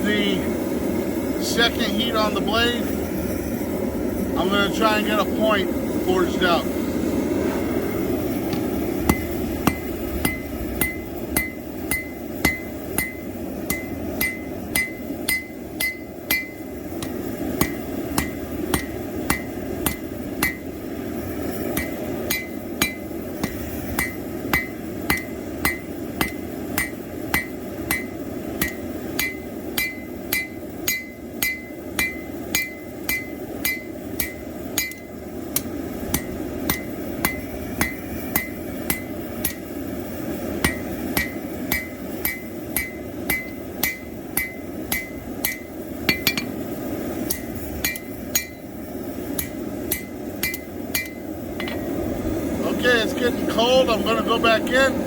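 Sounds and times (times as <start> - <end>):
steady low rush: 0.0 - 55.0
hammer striking steel on anvil: 8.5 - 20.7, 21.6 - 39.7, 40.6 - 46.6, 47.2 - 51.8.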